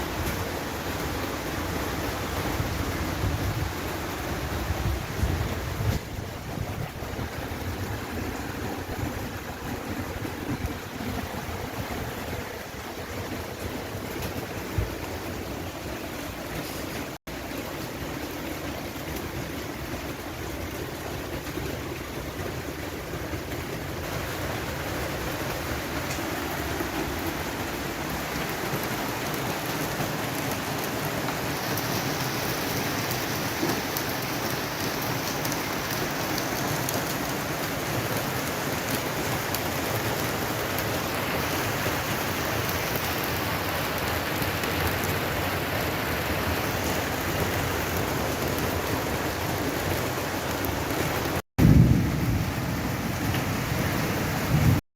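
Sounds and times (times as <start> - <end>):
steady rain falling: 0.0 - 54.8
wind rumbling on microphone: 2.3 - 12.8.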